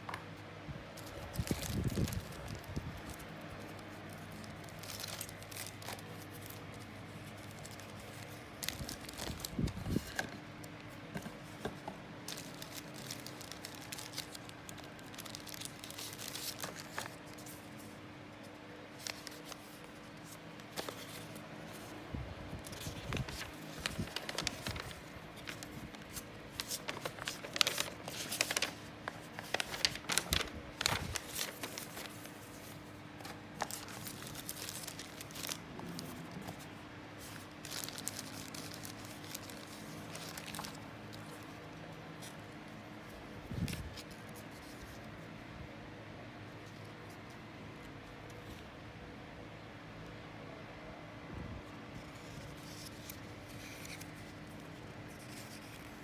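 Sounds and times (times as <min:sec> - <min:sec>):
faint steady hum: 0:00.0 - 0:56.0
packaging crinkling and tearing: 0:01.0 - 0:10.4, 0:11.3 - 0:17.9, 0:18.9 - 0:42.6.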